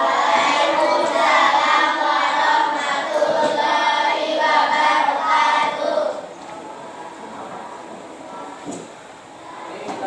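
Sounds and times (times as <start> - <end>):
group of voices singing: 0.0 - 6.3.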